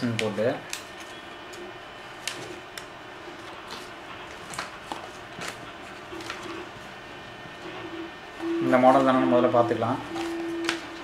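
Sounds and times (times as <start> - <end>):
paper and cardboard rustling: 3.3 - 6.9.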